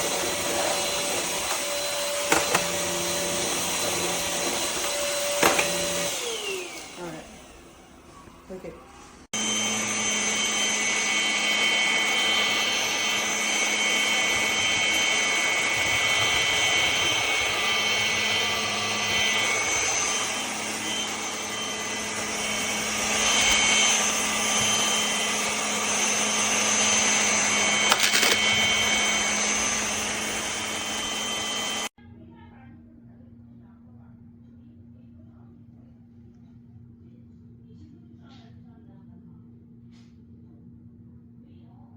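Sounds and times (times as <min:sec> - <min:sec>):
vacuum cleaner motor whining: 0:00.0 - 0:31.9.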